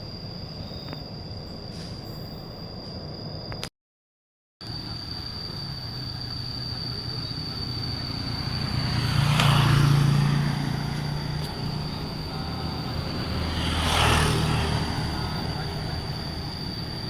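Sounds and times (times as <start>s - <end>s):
thin steady high tone: 0.0s - 3.7s, 4.6s - 17.0s
vehicle engine passing by: 5.6s - 17.0s.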